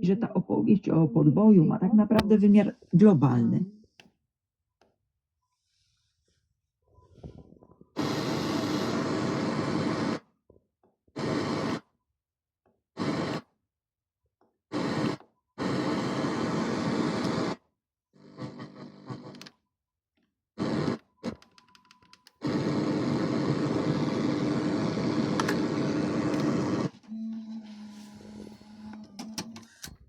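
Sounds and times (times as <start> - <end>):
faint radio station: 0.0 - 4.0, 20.6 - 30.0
radio static hiss: 8.0 - 10.2, 14.7 - 17.6, 22.4 - 26.9.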